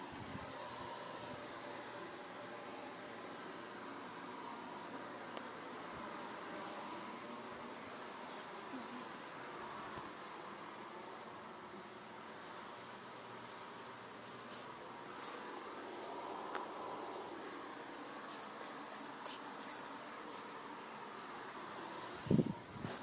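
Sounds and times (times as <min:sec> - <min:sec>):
cricket chirping: 0:00.0 - 0:23.0.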